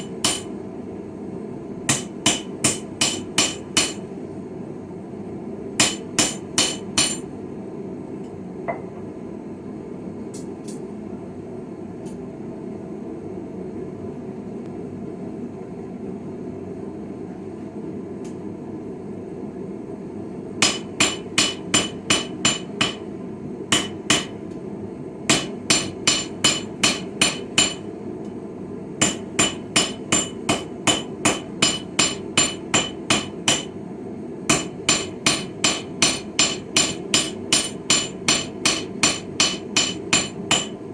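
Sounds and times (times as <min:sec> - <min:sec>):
hammer ringing on anvil: 0:00.2 - 0:00.5, 0:05.8 - 0:07.2, 0:20.6 - 0:23.0, 0:23.8 - 0:24.3, 0:25.3 - 0:27.8, 0:29.0 - 0:33.7, 0:34.5 - 0:40.8.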